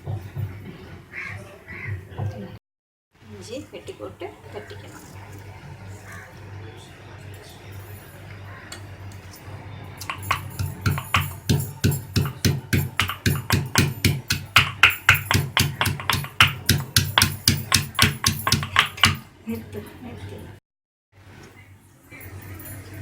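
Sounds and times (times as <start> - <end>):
ginger being pounded: 10.0 - 19.3.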